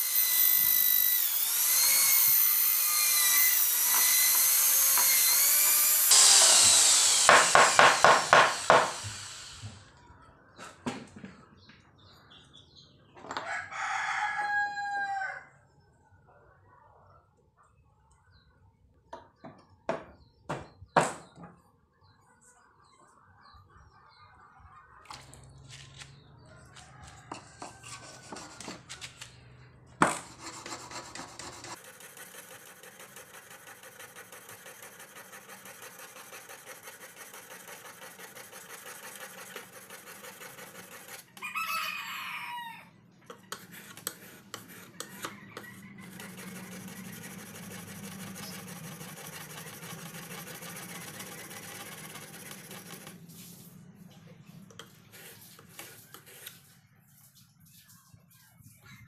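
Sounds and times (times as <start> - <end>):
rooster crowing: 13.4 - 15.6, 26.4 - 28.3, 41.4 - 43.0.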